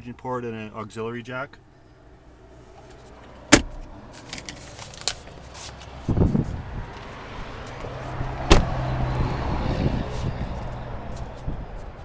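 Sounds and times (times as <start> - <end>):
thumps: 3.5 - 4.6, 8.5 - 8.9.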